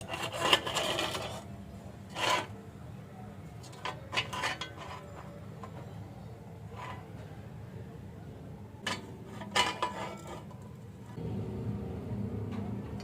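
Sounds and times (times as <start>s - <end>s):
metal scraping and rubbing: 0.0s - 2.6s, 3.6s - 5.8s, 6.7s - 7.3s, 8.8s - 11.2s
low hum: 11.1s - 13.0s.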